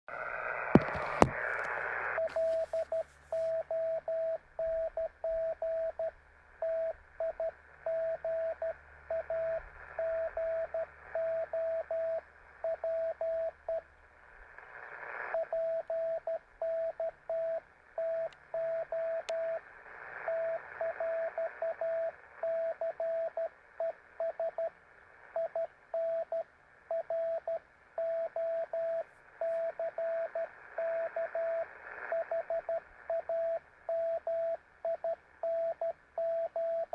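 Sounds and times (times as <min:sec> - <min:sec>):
radio band noise hiss: 0:00.1 - 0:04.8, 0:05.4 - 0:27.0, 0:27.6 - 0:35.4
morse code tone: 0:02.2 - 0:13.5.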